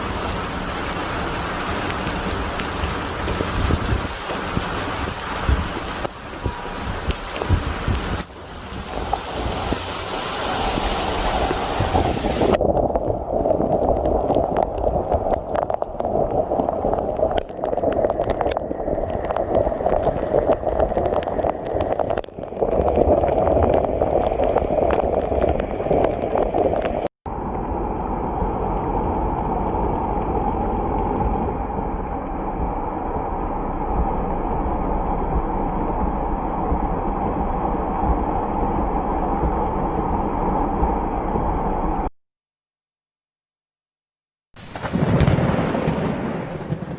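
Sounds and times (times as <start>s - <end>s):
floodwater rushing: 0.0s - 27.1s, 44.6s - 46.9s
rain falling: 0.0s - 27.1s, 44.6s - 46.9s.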